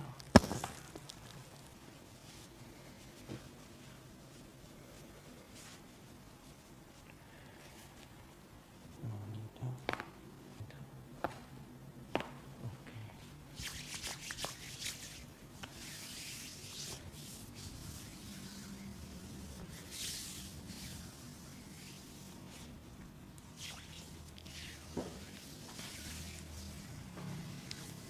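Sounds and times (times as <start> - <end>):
hands rubbing skin: 13.6 - 28.0.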